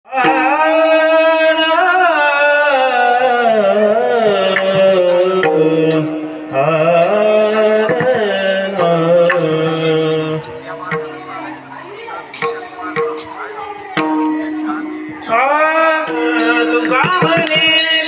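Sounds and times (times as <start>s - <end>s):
men singing devotional song: 0.1s - 10.5s, 15.1s - 18.0s
mridang drumming: 10.6s - 11.7s, 12.3s - 18.0s
sharp percussive strokes: 12.3s - 15.4s, 16.1s - 18.0s.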